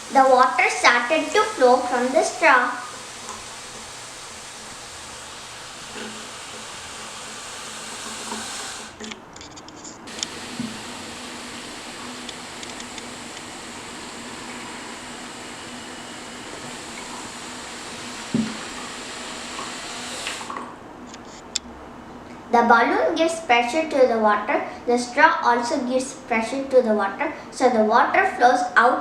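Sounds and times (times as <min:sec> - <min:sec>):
thin water stream hissing: 0:00.0 - 0:09.1, 0:10.0 - 0:21.4.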